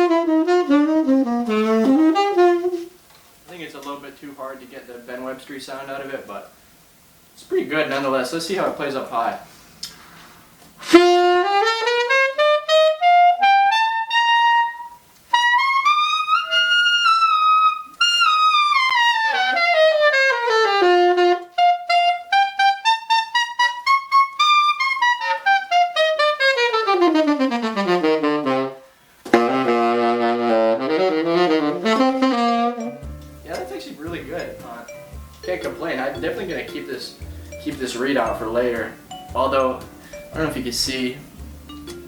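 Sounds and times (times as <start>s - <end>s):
solo saxophone: 0.0s - 3.0s, 10.8s - 34.5s.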